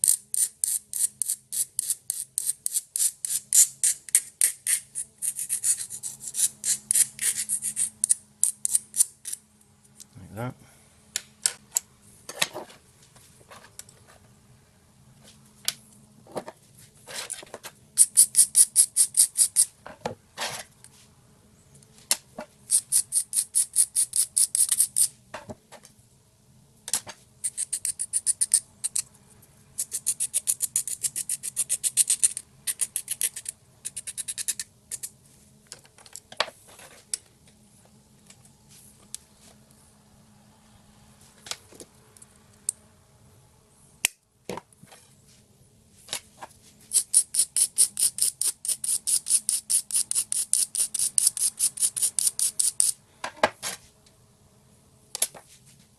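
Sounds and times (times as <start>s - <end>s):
hand tool scraping clicks: 0.0s - 9.4s, 27.4s - 29.1s, 29.8s - 35.1s, 46.9s - 53.0s
faint steady hum: 0.0s - 55.9s.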